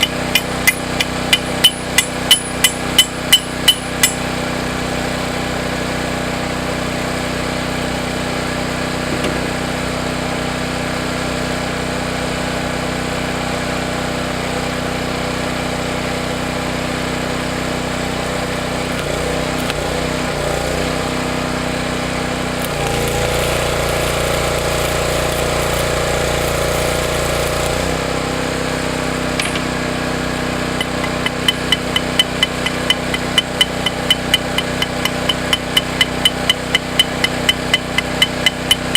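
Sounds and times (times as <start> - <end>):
hammer tapping on metal: 0.0 - 4.3, 29.4 - 29.8, 30.8 - 38.9
welding arc crackle and buzz: 18.9 - 21.2, 22.4 - 28.1.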